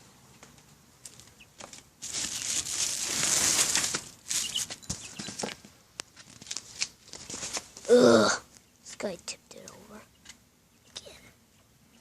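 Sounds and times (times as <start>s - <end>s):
baby birds rustling in bedding: 1.0s - 7.9s.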